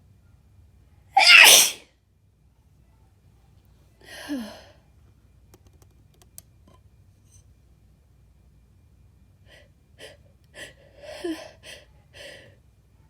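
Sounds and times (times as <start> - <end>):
woman sneezing: 1.2 - 1.8.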